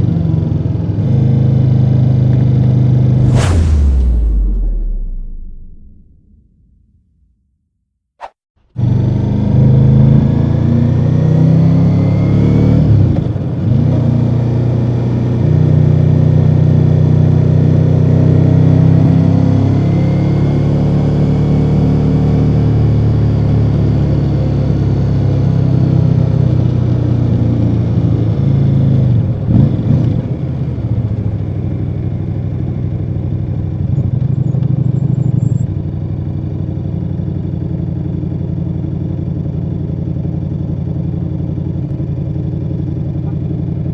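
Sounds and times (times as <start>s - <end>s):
motorcycle engine running: 30.4s - 43.9s.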